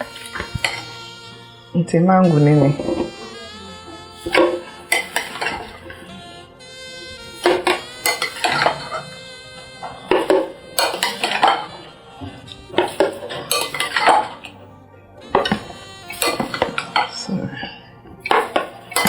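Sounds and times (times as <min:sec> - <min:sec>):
utensils clinking against dishes: 0:00.0 - 0:01.0, 0:04.2 - 0:06.2, 0:07.2 - 0:09.1, 0:10.1 - 0:11.8, 0:12.4 - 0:14.7, 0:15.3 - 0:17.5, 0:18.2 - 0:19.0.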